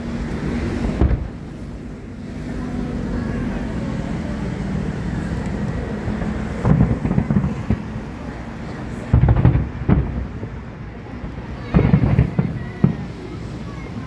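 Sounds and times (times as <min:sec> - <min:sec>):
low rumble of firework bursts: 0:00.0 - 0:14.0
loud firework booms: 0:00.8 - 0:01.5, 0:06.2 - 0:14.0.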